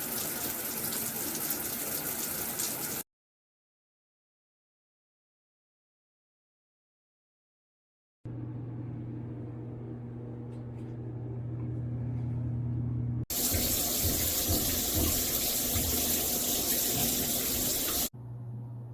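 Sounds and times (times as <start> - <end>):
water spraying from shower head: 0.0 - 3.0, 13.3 - 18.1
steady low hum: 8.3 - 15.8.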